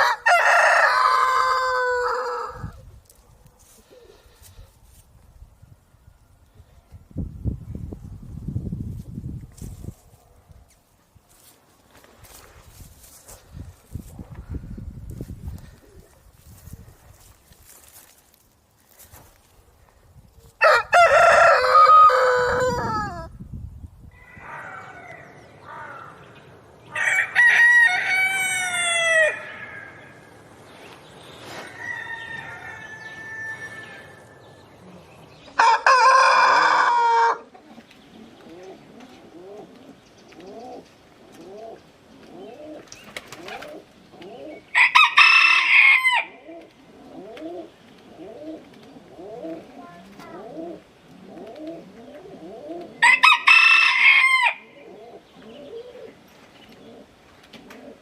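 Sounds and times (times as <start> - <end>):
roosters crowing: 0.0 - 2.8, 20.6 - 23.3, 24.1 - 26.2, 26.9 - 30.4, 31.5 - 34.6, 35.5 - 37.7, 44.3 - 47.7, 52.5 - 56.1
quieter bird calls: 54.6 - 57.2.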